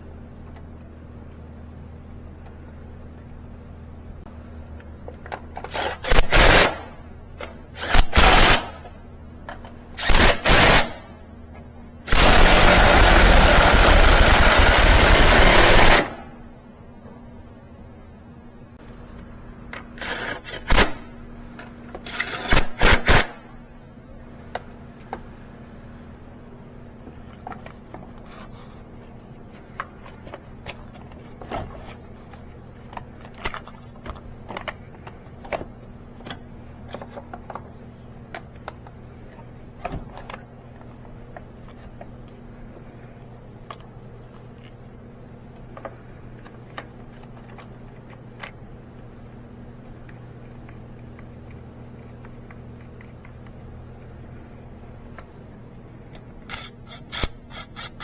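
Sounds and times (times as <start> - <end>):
steady low hum: 0.0 - 58.0
loud rattling bursts: 12.1 - 16.2
metal tools clinking and scraping: 33.2 - 34.8.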